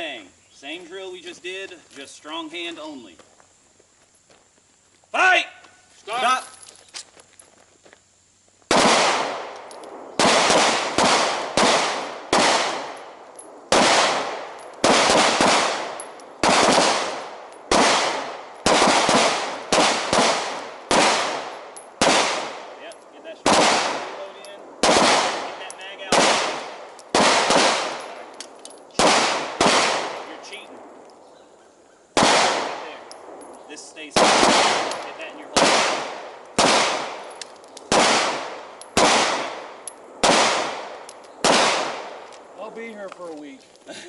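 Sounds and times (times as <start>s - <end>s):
pistol shots with echo: 8.7s - 31.0s, 32.1s - 42.2s.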